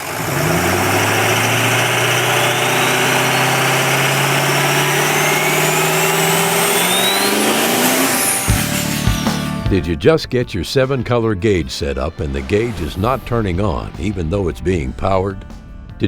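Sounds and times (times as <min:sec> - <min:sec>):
car engine revving: 0:00.0 - 0:09.9
high rising whine: 0:00.0 - 0:10.0, 0:11.4 - 0:16.0.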